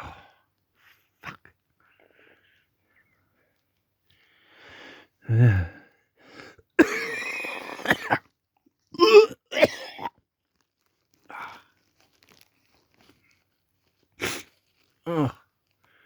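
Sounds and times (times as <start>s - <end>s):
man coughing: 6.8s - 8.2s, 9.0s - 10.1s
man retching: 6.8s - 8.3s, 9.0s - 10.2s, 14.2s - 14.5s.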